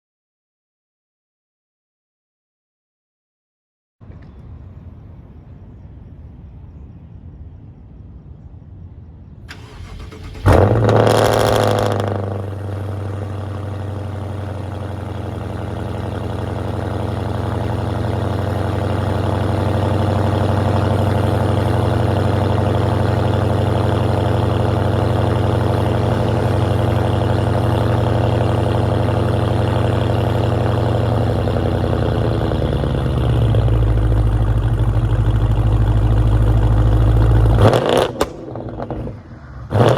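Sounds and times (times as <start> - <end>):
car engine cranking: 9.5 - 13.7, 18.2 - 39.1
car engine revving and idling: 9.5 - 39.9.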